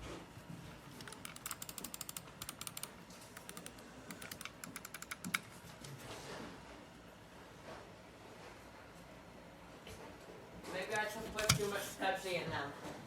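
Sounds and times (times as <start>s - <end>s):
mechanical keyboard typing: 1.0s - 5.5s.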